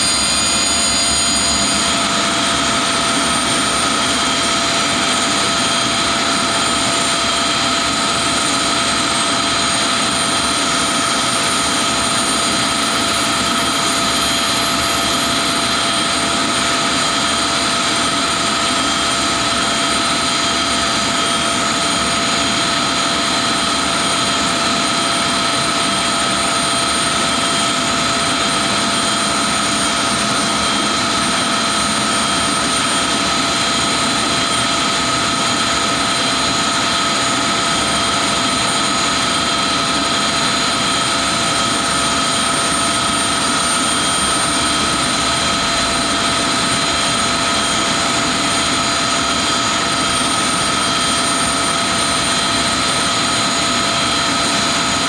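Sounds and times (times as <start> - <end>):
high engine whines: 0.0 - 55.0
jet engine roar: 0.0 - 55.0.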